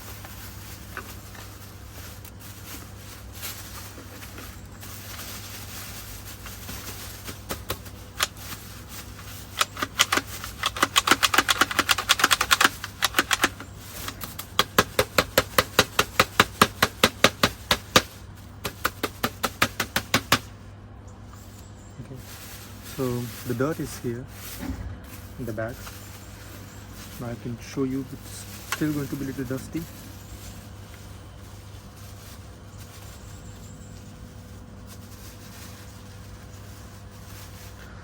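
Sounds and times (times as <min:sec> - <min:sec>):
plastic dust bin knocking: 0:14.1 - 0:20.5.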